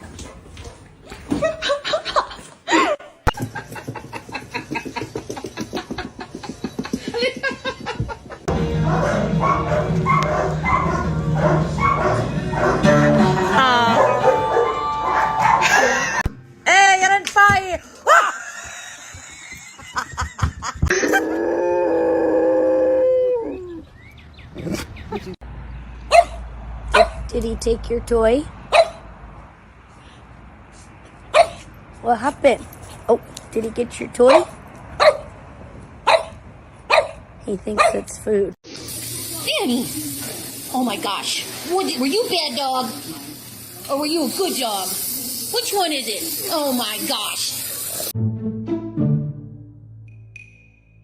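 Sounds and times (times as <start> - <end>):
person laughing: 1.3 - 8.5, 15.4 - 16.3, 18.1 - 21.4
dog howling: 13.8 - 15.7.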